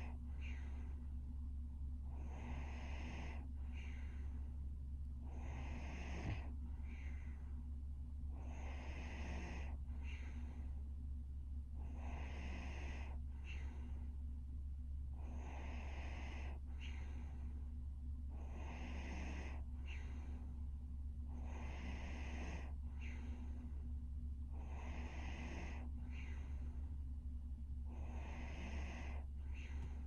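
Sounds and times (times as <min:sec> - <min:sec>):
steady low hum: 0:00.0 - 0:30.0
woman snoring: 0:02.2 - 0:04.0, 0:05.3 - 0:06.5, 0:08.4 - 0:10.2, 0:11.8 - 0:13.7, 0:15.2 - 0:17.0, 0:18.4 - 0:20.3, 0:21.4 - 0:23.2, 0:24.6 - 0:26.4, 0:28.0 - 0:30.0.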